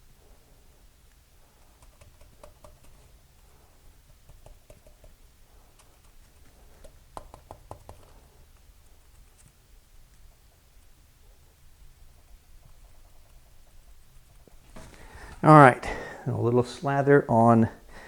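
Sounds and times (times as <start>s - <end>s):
light clicks and taps: 4.0s - 10.9s.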